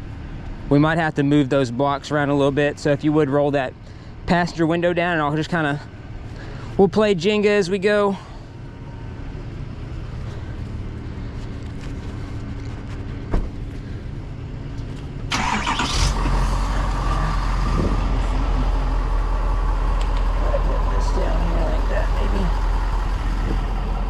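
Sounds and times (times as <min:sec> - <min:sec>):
vehicle engine idling: 0:01.6 - 0:24.0
engine cranking and starting: 0:15.3 - 0:18.0.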